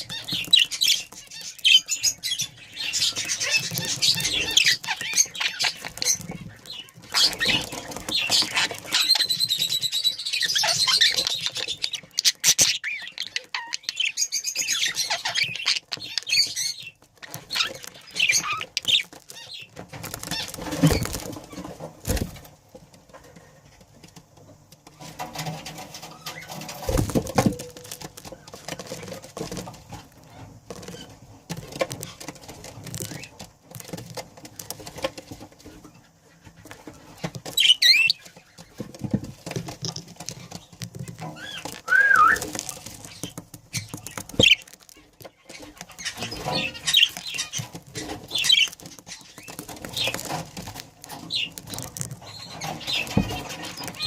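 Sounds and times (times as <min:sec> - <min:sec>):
wing fluttering: 0:00.0 - 0:12.5, 0:14.9 - 0:22.5
budgerigars chirping: 0:00.0 - 0:19.7, 0:37.4 - 0:38.7, 0:45.4 - 0:50.4.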